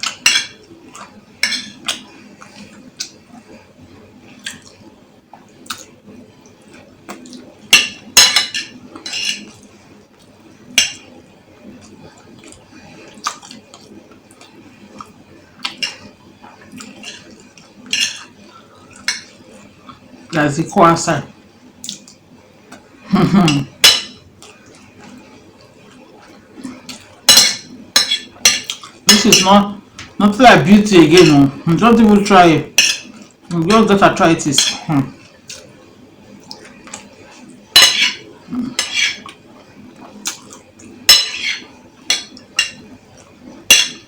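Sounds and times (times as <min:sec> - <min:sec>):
cutlery clinking on a dish: 0:00.0 - 0:00.6, 0:01.4 - 0:02.0, 0:07.7 - 0:09.5, 0:16.9 - 0:18.4, 0:23.4 - 0:24.2, 0:27.3 - 0:29.6, 0:32.8 - 0:33.2, 0:34.5 - 0:34.9, 0:37.8 - 0:39.4, 0:41.1 - 0:42.8, 0:43.7 - 0:44.0.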